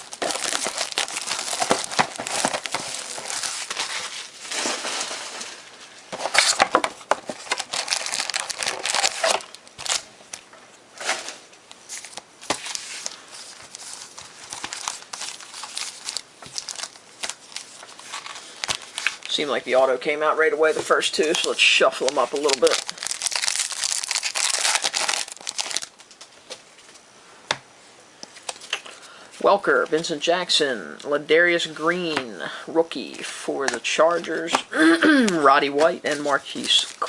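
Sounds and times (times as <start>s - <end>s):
plastic and foil packs crinkling: 0.0s - 19.5s, 20.8s - 26.6s, 33.9s - 37.0s.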